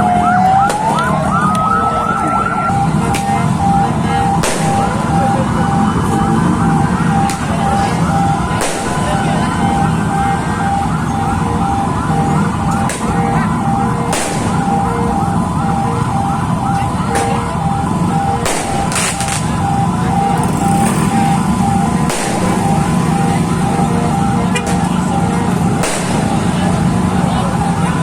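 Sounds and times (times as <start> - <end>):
siren on-off beeping: 0.0 - 28.0
siren rising wail: 0.0 - 28.0
firework bangs: 4.4 - 5.0, 8.5 - 9.3, 14.1 - 14.8, 18.4 - 19.6, 22.0 - 23.3, 25.7 - 26.7.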